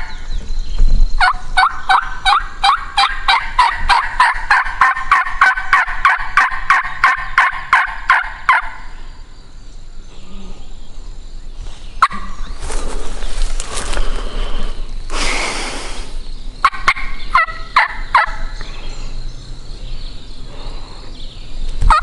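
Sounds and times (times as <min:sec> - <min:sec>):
rustling: 0:11.6 - 0:16.1
turkey call hen notes: 0:16.6 - 0:18.5.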